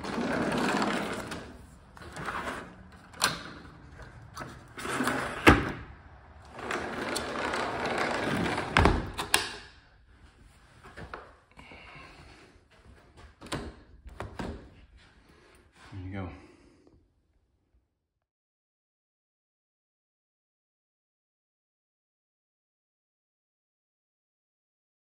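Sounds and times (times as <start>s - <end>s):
sliding door rolling on track: 0.0s - 9.6s.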